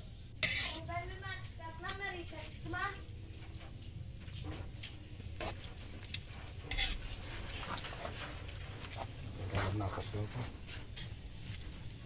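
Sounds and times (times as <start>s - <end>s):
low steady hum: 0.0s - 12.0s
utensil scraping a pan: 0.4s - 0.9s, 5.3s - 9.7s.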